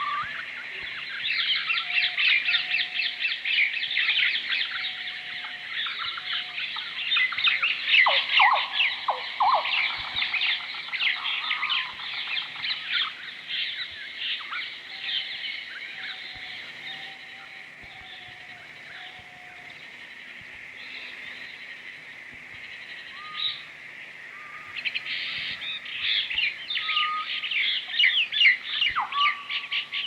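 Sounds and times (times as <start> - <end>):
lower falling bird calls: 0.0 - 19.8, 24.3 - 30.0
small birds chirping: 0.0 - 21.6.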